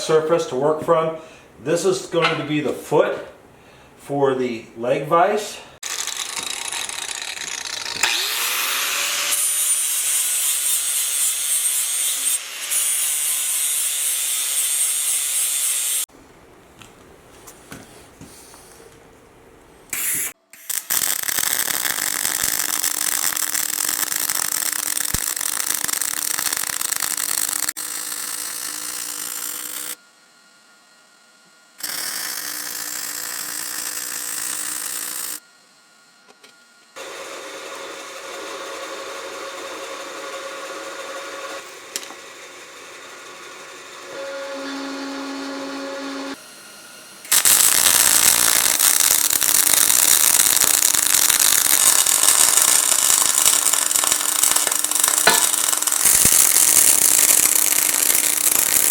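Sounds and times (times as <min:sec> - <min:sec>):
power tool running: 0:05.8 - 0:16.1, 0:19.9 - 0:30.0, 0:31.8 - 0:35.5, 0:37.0 - 0:58.9.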